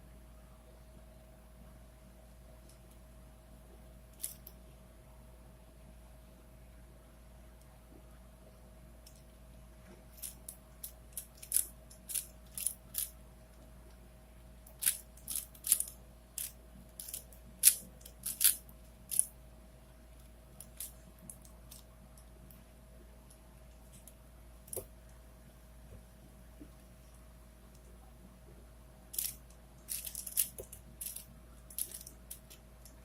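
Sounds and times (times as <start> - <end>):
puzzle cube plastic clicks: 14.7 - 19.3, 29.1 - 33.0.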